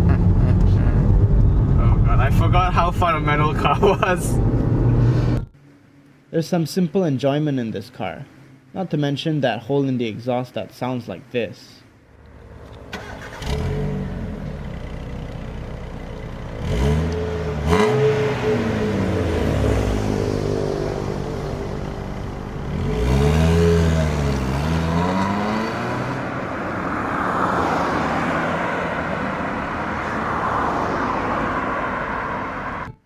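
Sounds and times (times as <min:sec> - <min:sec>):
road and wind noise: 0:00.0 - 0:06.3, 0:11.9 - 0:33.0
car engine revving with raspy exhaust: 0:12.4 - 0:27.4.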